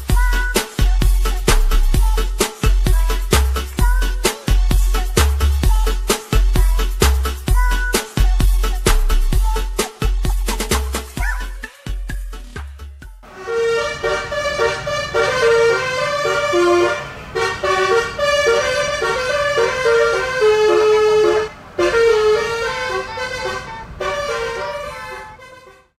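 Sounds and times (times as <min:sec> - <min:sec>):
bus horn playing a melody: 0:13.2 - 0:26.0.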